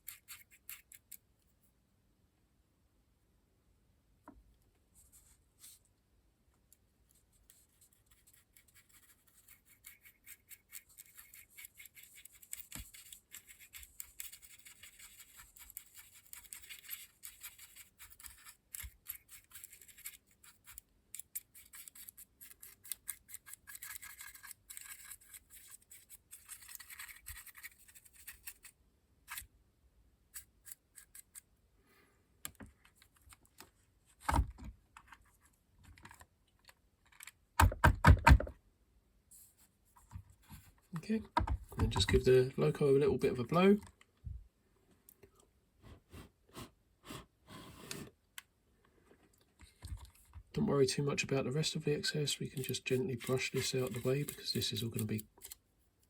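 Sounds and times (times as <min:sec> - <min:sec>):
brush scrubbing scratchily: 0:07.8 - 0:20.8, 0:52.2 - 0:55.6.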